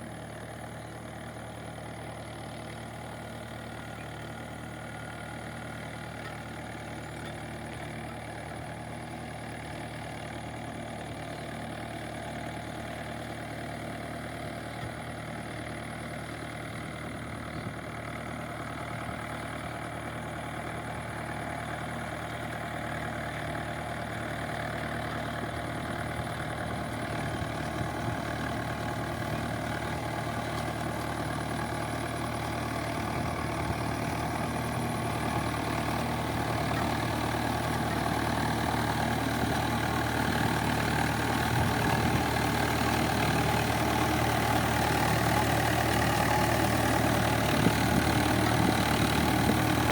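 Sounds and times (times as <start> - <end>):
tractor diesel engine running: 0.0 - 49.9.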